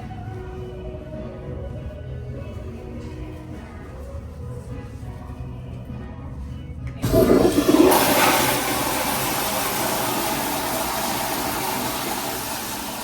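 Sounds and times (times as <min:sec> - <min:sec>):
toilet flushing: 0:07.0 - 0:13.0.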